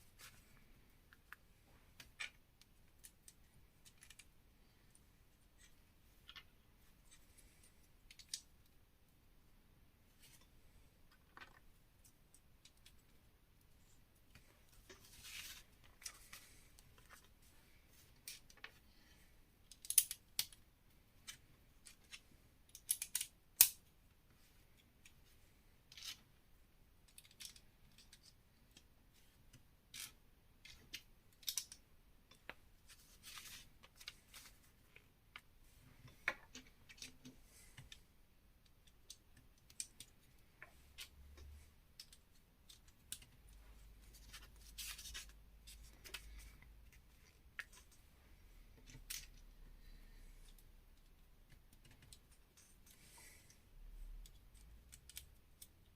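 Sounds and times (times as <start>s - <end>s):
plastic bricks clicking together: 19.7s - 20.6s, 22.7s - 23.8s, 29.9s - 32.6s.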